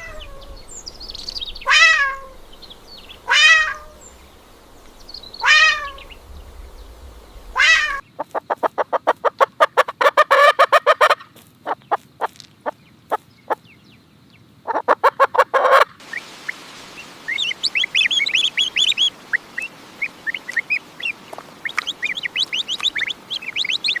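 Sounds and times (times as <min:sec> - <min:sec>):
cat meowing: 0:00.0 - 0:00.6, 0:01.6 - 0:02.4, 0:03.3 - 0:04.0, 0:05.4 - 0:06.1, 0:07.6 - 0:08.0
small birds chirping: 0:00.0 - 0:09.4, 0:11.6 - 0:24.0
chicken clucking: 0:07.9 - 0:12.8, 0:14.7 - 0:16.0, 0:20.3 - 0:24.0.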